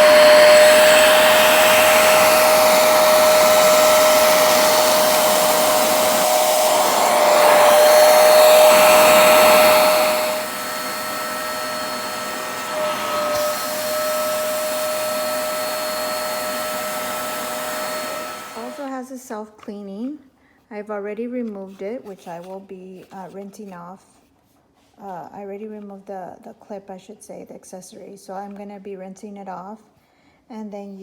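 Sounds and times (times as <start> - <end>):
rushing air: 0.0 - 18.8
carpet cleaner motor whining: 0.0 - 18.9.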